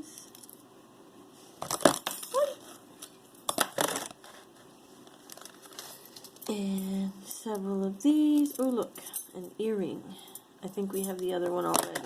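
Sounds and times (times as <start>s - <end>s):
costume jewelry clattering: 8.3s - 9.5s, 10.3s - 12.0s.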